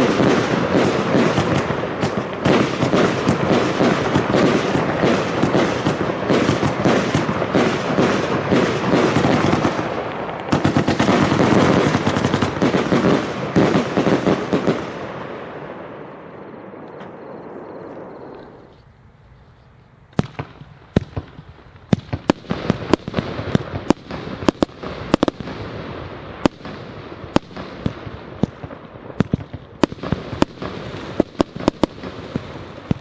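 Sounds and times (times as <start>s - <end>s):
fireworks shots and bangs: 0.0s - 18.6s, 20.1s - 33.0s.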